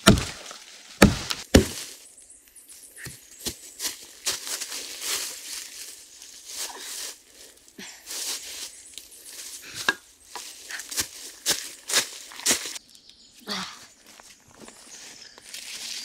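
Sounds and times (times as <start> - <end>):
branches snapping: 0.0 - 2.0, 9.8 - 12.8
dry branches and leaves rustling: 0.0 - 16.0.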